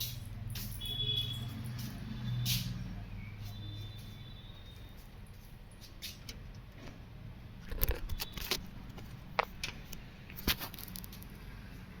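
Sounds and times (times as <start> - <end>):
sharp clicks and light knocks: 7.6 - 11.4.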